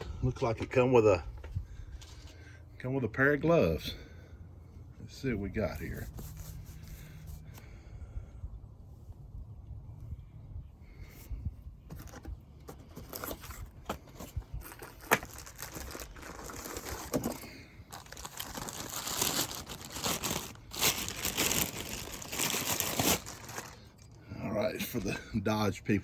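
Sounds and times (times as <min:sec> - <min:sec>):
packaging crinkling and tearing: 0:12.9 - 0:24.2.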